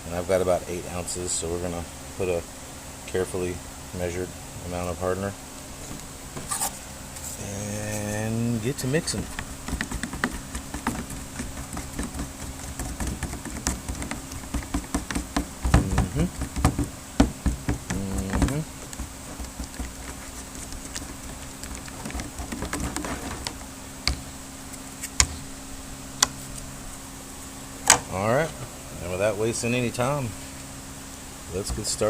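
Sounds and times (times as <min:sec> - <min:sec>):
low buzzing hum: 0:00.0 - 0:32.0
stirring clicks taps and scrapes: 0:09.0 - 0:24.2.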